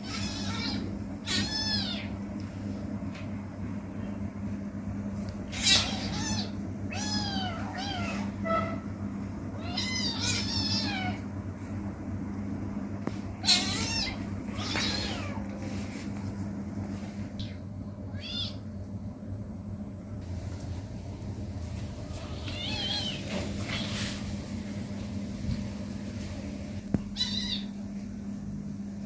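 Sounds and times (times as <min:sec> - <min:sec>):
kitten meowing: 0:00.0 - 0:02.1, 0:05.5 - 0:08.4, 0:09.6 - 0:11.2, 0:13.4 - 0:15.4, 0:18.1 - 0:18.6, 0:22.4 - 0:23.9, 0:27.2 - 0:27.7.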